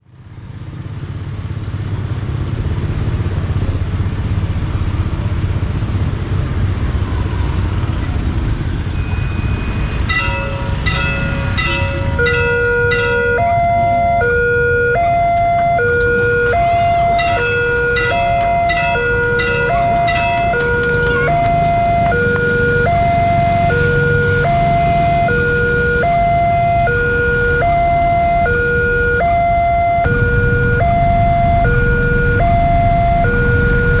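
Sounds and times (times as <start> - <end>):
two-tone level crossing alarm: 8.9 - 34.0
steady low rumble: 29.5 - 33.7.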